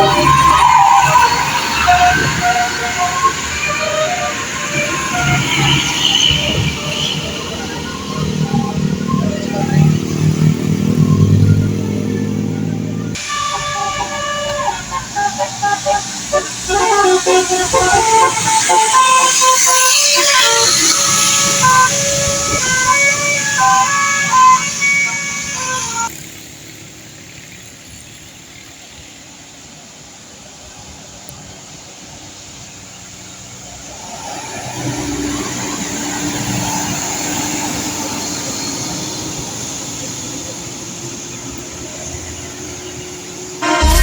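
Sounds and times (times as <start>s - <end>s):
bus horn playing melody: 0.0s - 26.1s, 43.6s - 44.0s
large vehicle droning past: 0.0s - 27.7s
road traffic: 0.0s - 44.0s.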